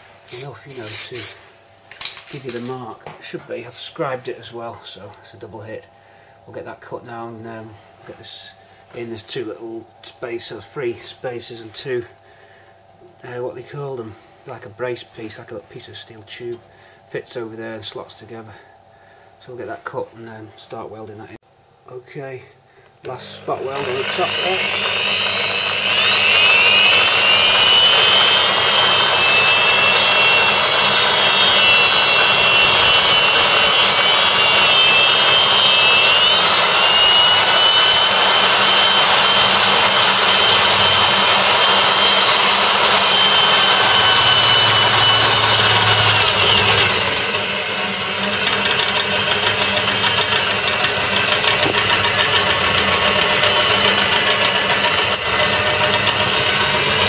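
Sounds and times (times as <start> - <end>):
high-pitched power tool on steel: 0.0 - 2.8, 23.0 - 57.0.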